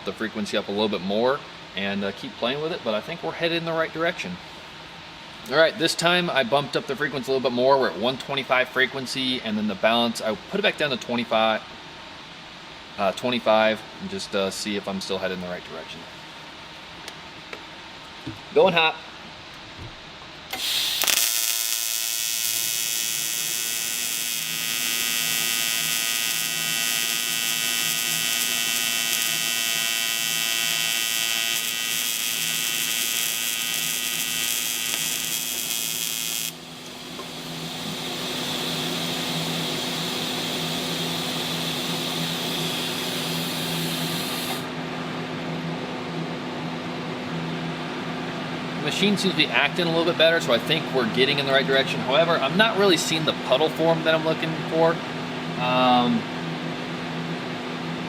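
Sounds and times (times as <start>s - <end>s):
welding arc buzzing: 20.5s - 44.7s.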